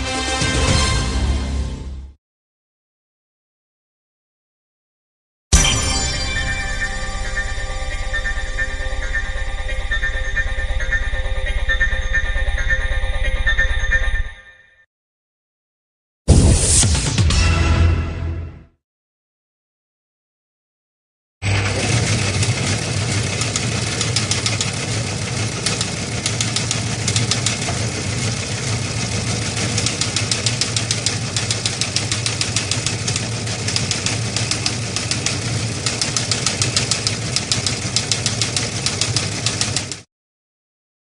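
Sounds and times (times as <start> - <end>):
rapid mechanical clatter: 21.5 - 40.1.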